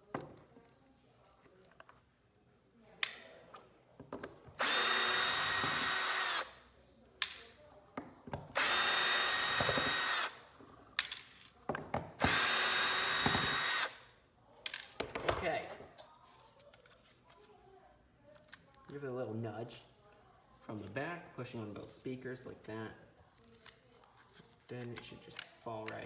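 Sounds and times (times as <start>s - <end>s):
electric screwdriver running: 4.6s - 6.6s, 8.5s - 10.5s, 12.2s - 14.0s.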